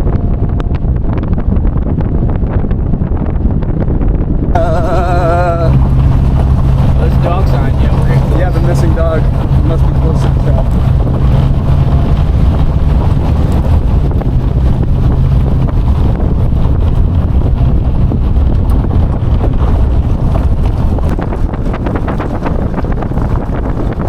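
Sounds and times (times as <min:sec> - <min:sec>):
low hum: 0:00.0 - 0:24.0
road and engine rumble: 0:00.0 - 0:24.0
wind buffeting microphone: 0:00.0 - 0:24.0.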